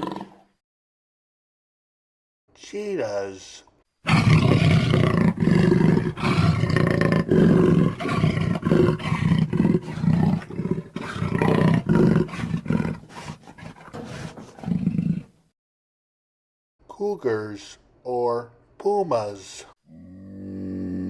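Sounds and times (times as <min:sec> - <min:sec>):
cheetah growling calls: 0:00.0 - 0:00.4, 0:04.0 - 0:15.3.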